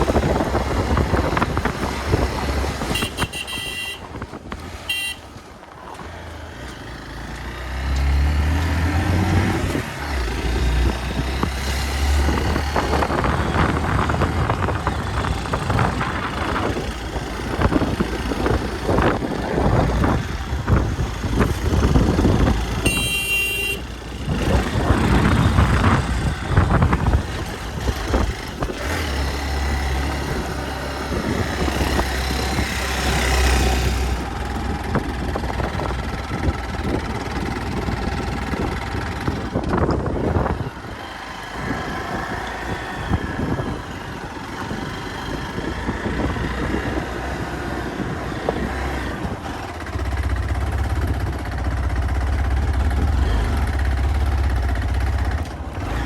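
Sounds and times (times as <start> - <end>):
motorcycle engine rumbling: 0.0 - 56.0
high horn toot: 2.8 - 4.2, 4.8 - 5.3, 22.8 - 24.0.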